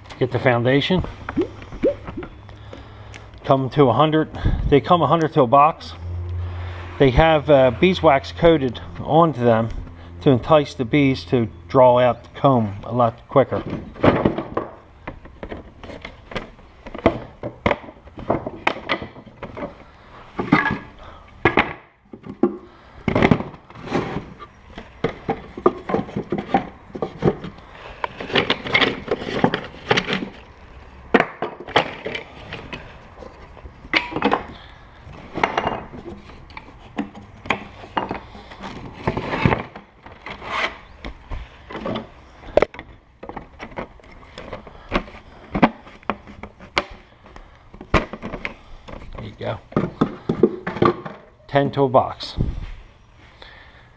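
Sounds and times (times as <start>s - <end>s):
wood and plastic clicking and knocking: 13.5s - 30.5s, 31.1s - 40.4s, 41.0s - 51.3s.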